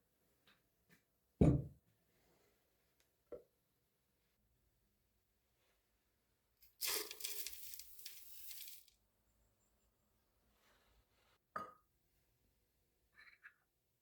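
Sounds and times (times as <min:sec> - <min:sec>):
crinkly tearing: 0:06.8 - 0:08.9.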